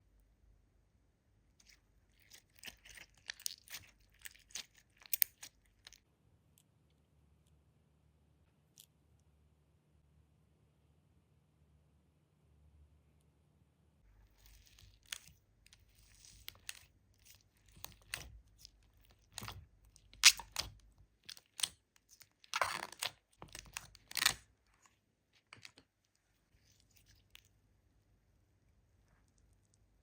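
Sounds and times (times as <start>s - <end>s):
hissy slime squishes: 1.5s - 6.0s, 14.2s - 27.6s.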